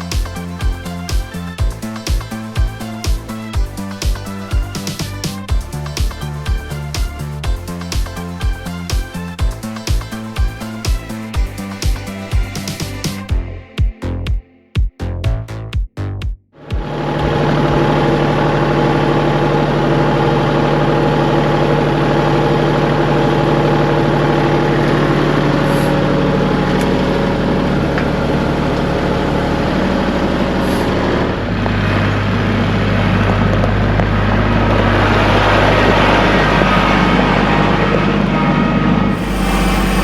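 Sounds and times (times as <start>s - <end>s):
engine running: 16.7s - 37.4s, 39.2s - 40.0s.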